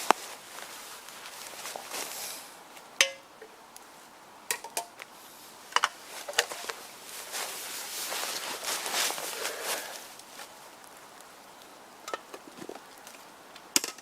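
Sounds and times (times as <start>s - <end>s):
rustling: 0.0s - 2.9s, 3.8s - 14.0s
metal cookware clinking: 12.1s - 12.4s.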